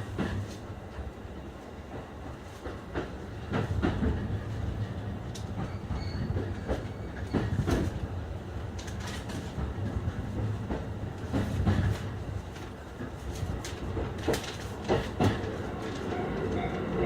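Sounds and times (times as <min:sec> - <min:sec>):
train rumble from inside: 0:00.0 - 0:17.0
wheels clicking over rail joints: 0:08.7 - 0:17.0.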